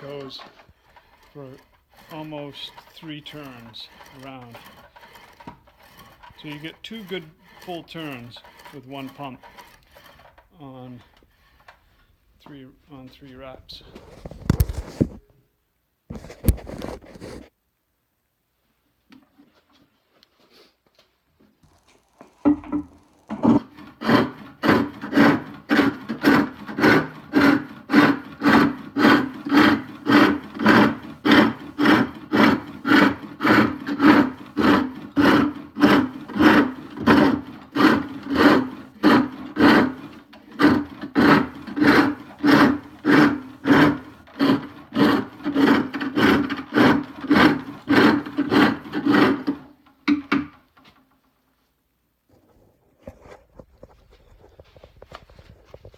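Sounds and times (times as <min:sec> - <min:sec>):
lathe tool shaving spinning wood: 0:00.0 - 0:11.8, 0:21.6 - 0:49.8.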